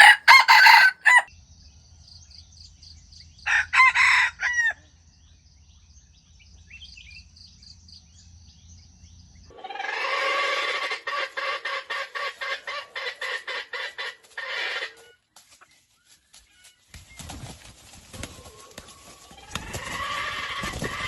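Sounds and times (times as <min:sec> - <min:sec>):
chickens chirping: 0:00.0 - 0:01.3.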